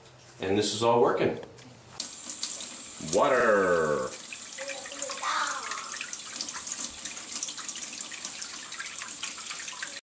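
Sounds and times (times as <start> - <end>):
tap water splashing into sink: 2.0 - 10.0.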